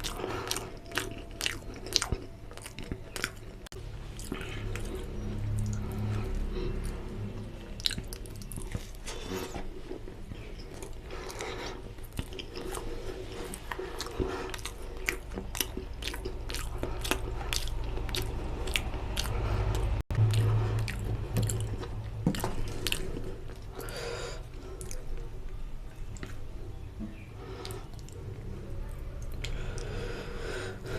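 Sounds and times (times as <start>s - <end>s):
person chewing food: 0.0s - 30.9s.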